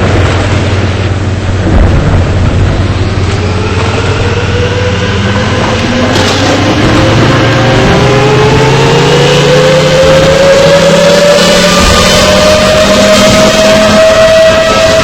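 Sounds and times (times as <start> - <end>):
low steady hum: 0.0 - 9.6
warning siren winding up: 3.2 - 15.0.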